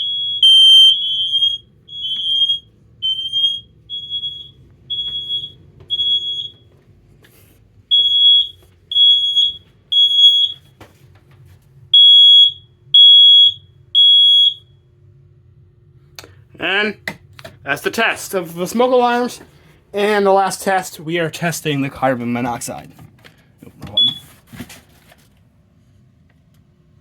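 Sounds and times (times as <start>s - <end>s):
heat alarm high-pitched beeps: 0.0s - 6.7s, 7.9s - 10.7s, 11.9s - 14.8s, 23.9s - 24.3s.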